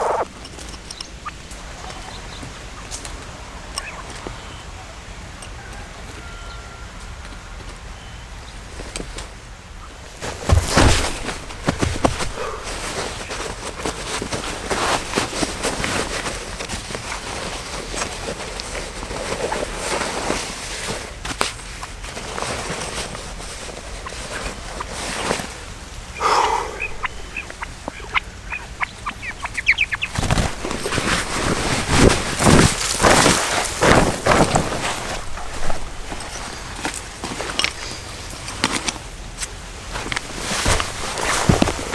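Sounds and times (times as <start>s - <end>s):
bird calling: 0.0s - 6.8s, 9.8s - 14.0s, 23.2s - 38.5s
rustling: 10.0s - 41.9s.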